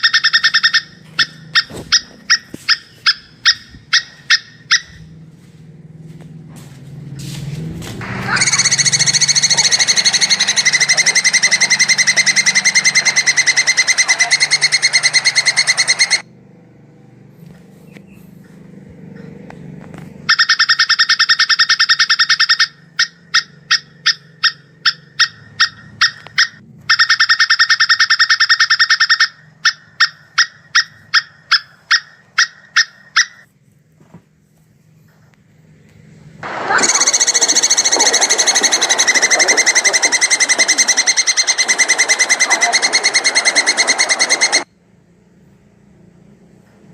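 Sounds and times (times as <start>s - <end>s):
squirrel chattering: 0.0s - 4.9s, 8.3s - 16.2s, 36.7s - 44.6s.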